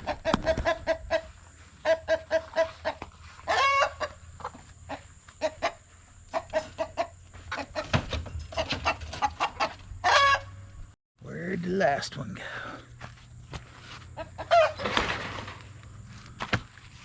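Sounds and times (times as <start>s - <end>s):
loud chicken squawk: 0.0s - 4.2s, 8.8s - 10.6s, 14.2s - 15.0s
chickens clucking: 0.0s - 10.7s, 13.8s - 16.1s.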